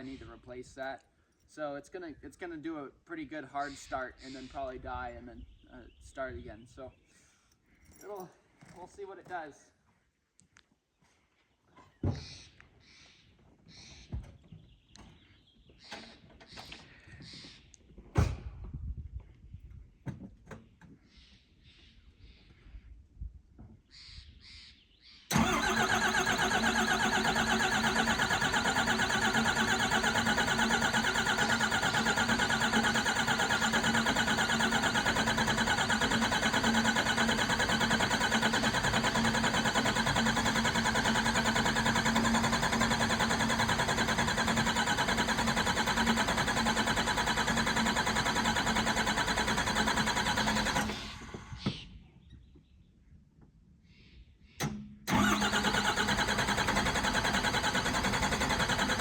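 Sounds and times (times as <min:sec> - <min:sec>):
diesel engine running: 0:25.3 - 0:51.5, 0:55.1 - 0:59.0
engine stalling and restarting: 0:25.3 - 0:51.7, 0:54.6 - 0:59.0.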